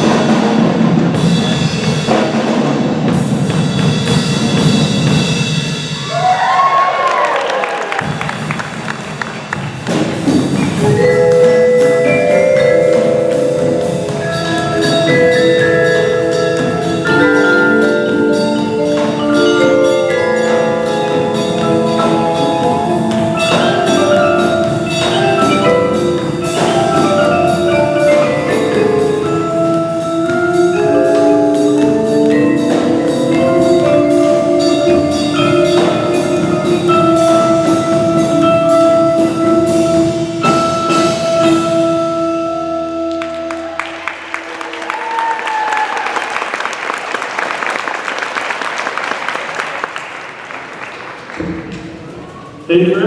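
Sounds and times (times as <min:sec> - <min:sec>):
percussion ensemble playing: 0:00.0 - 0:53.0
ringing mallet instrument notes: 0:10.7 - 0:44.9.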